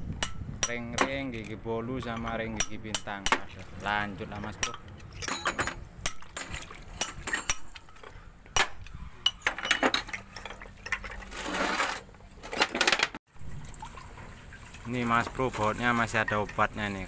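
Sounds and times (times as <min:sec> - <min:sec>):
metal parts clinking: 0:04.3 - 0:13.2.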